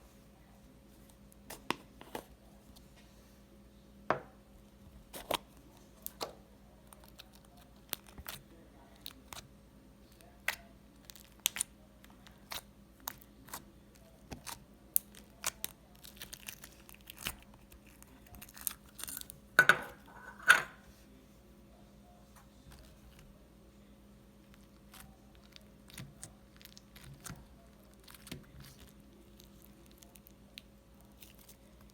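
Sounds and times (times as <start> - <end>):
crunchy slime crackling: 10.4 - 19.4, 24.4 - 31.9.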